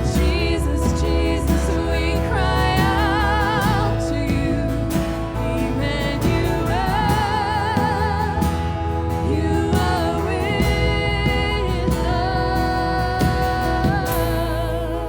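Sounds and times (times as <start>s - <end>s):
lead singer with vibrato: 0.0s - 15.0s
live worship band playing: 0.0s - 15.0s.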